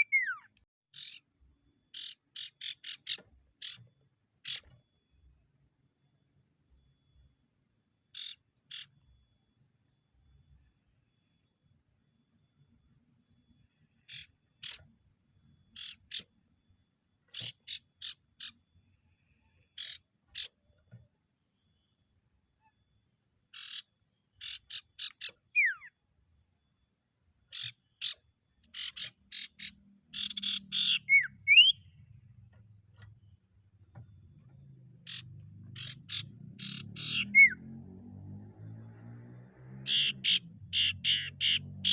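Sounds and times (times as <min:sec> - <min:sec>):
bird harsh chirps: 0:00.0 - 0:01.3, 0:01.9 - 0:04.8, 0:14.0 - 0:15.0, 0:15.7 - 0:16.4, 0:17.3 - 0:18.7, 0:19.4 - 0:20.6, 0:23.5 - 0:26.0, 0:27.5 - 0:32.1, 0:35.0 - 0:37.8, 0:39.8 - 0:41.9.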